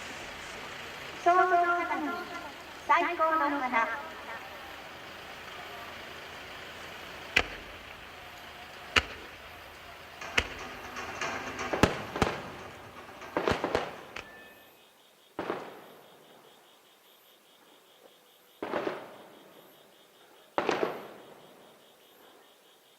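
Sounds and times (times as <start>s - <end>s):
firework shells bursting: 0.0s - 14.7s
fireworks crackling: 0.0s - 14.7s, 18.6s - 19.4s.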